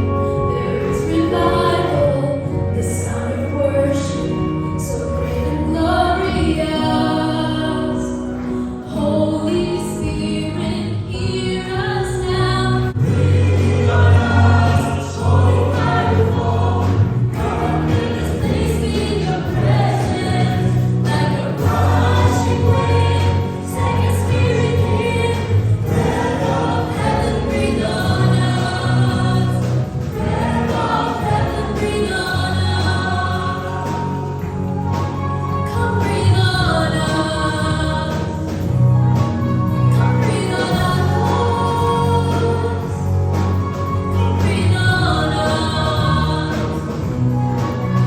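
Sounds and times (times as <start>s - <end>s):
group singing worship song: 0.0s - 10.0s, 10.6s - 48.0s
instrumental accompaniment: 0.0s - 48.0s
sustained bass line: 0.0s - 48.0s.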